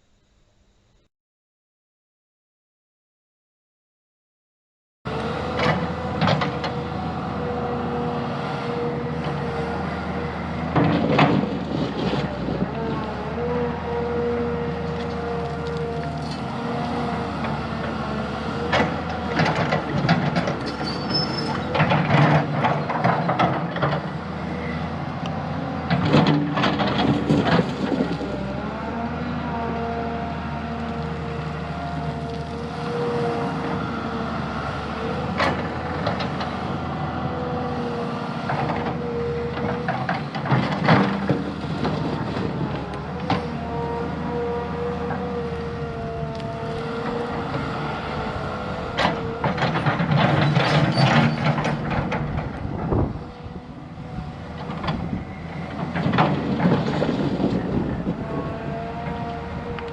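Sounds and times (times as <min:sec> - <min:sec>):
excavator diesel engine running: 0:05.1 - 0:59.9
metallic clanking of tracks: 0:48.9 - 0:53.0.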